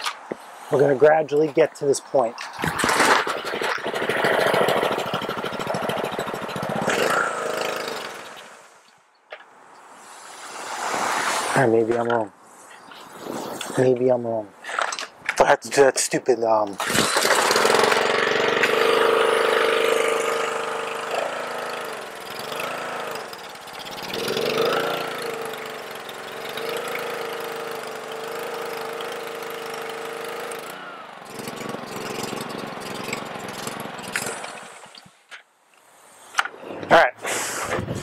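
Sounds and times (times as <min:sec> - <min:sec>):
pressure washer engine running unevenly: 0:03.2 - 0:08.4, 0:16.8 - 0:35.0.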